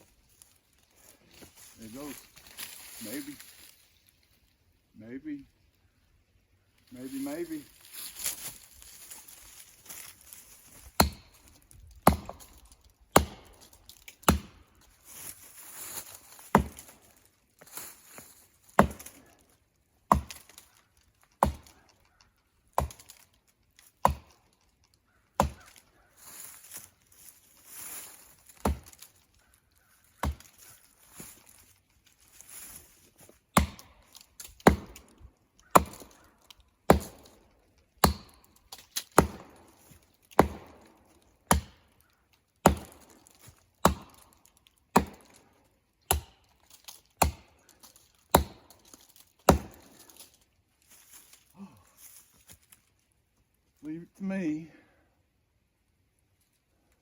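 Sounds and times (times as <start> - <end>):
axe chopping wood: 10.9 - 11.4, 12.0 - 14.6, 16.4 - 16.9, 18.8 - 19.2, 20.1 - 20.6, 21.4 - 21.8, 22.8 - 23.2, 24.0 - 24.4, 25.4 - 25.8, 28.6 - 29.0, 30.2 - 30.6, 33.5 - 36.2, 36.8 - 37.4, 38.0 - 41.9, 42.6 - 45.4, 46.0 - 46.5, 47.2 - 50.2.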